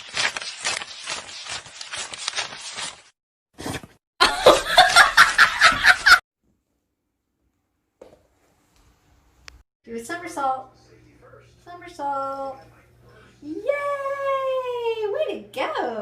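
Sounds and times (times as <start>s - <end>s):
person laughing: 4.2s - 6.2s.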